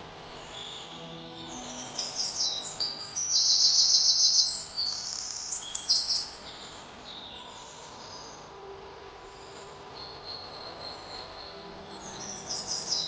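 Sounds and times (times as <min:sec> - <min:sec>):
songbirds chirping: 0:00.0 - 0:13.0
fast high-pitched bird trill: 0:01.6 - 0:06.3, 0:10.0 - 0:13.0.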